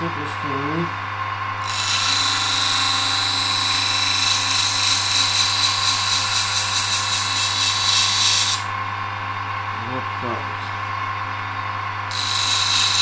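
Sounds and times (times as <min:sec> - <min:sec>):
motor hum: 0:00.0 - 0:13.0
knife grinding on sharpening wheel: 0:01.6 - 0:08.7, 0:12.1 - 0:13.0.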